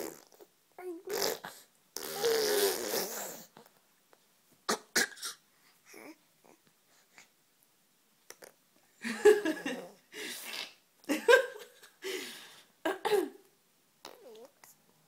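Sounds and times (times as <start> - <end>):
baby grunting: 0.0 - 3.6.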